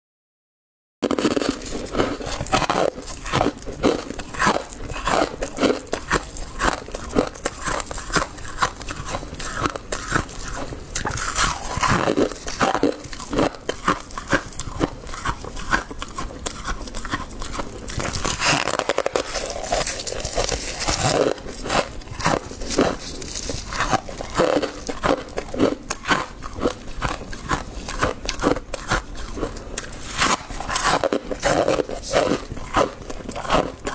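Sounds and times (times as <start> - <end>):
frost crunching while chewed: 1.0 - 33.9.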